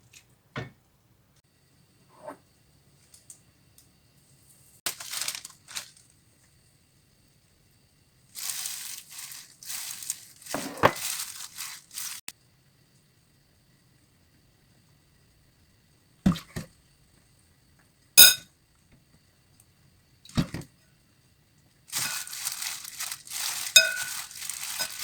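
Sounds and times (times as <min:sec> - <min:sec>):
dry crinkling and crushing: 0:04.9 - 0:06.1, 0:08.4 - 0:12.2, 0:21.9 - 0:25.0.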